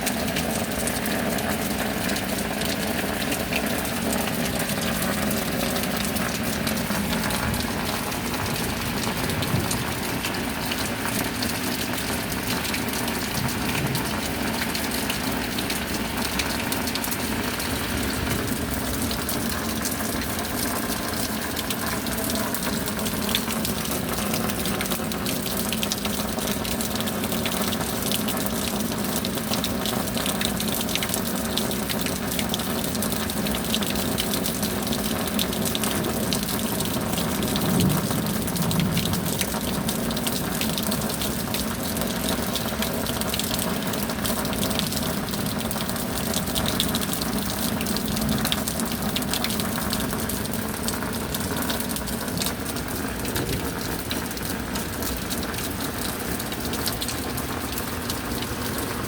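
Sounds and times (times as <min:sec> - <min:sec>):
steady rain hiss: 0:00.0 - 0:26.1, 0:34.7 - 0:59.0
raindrop ticks: 0:00.0 - 0:59.0.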